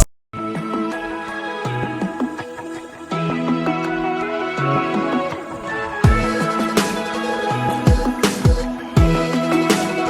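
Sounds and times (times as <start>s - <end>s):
electronic music: 0.0s - 10.0s
deep kick drums: 6.1s - 6.4s, 7.9s - 9.3s.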